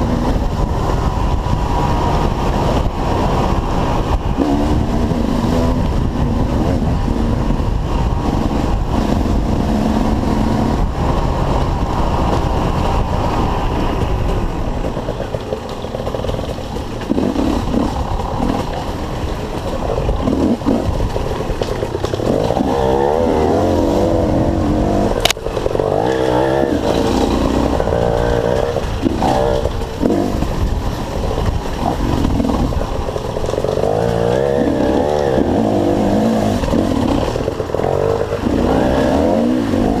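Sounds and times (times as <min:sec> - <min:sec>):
dirt bike engines revving: 0:00.0 - 0:40.0
sharp crack: 0:25.1 - 0:30.6.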